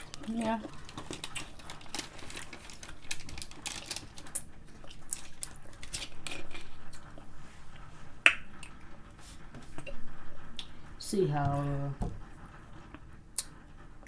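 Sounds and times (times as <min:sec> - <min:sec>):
person chewing crunchy food: 0:00.0 - 0:07.3.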